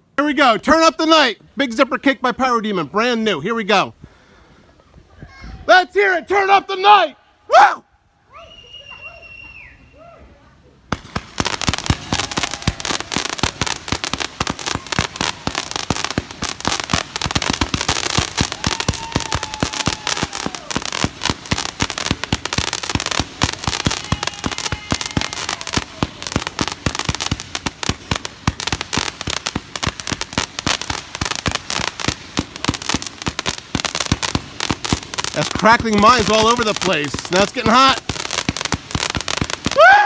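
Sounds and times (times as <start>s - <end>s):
firework shots in rapid succession: 10.9s - 39.8s
crackling firework mines: 10.9s - 40.0s.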